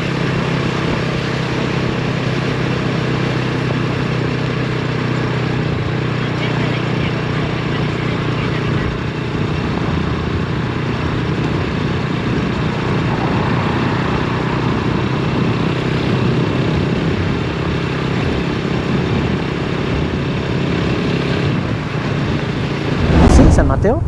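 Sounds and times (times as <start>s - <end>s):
road noise: 5.7s - 16.0s, 22.7s - 24.0s
wind rushing: 22.9s - 24.0s.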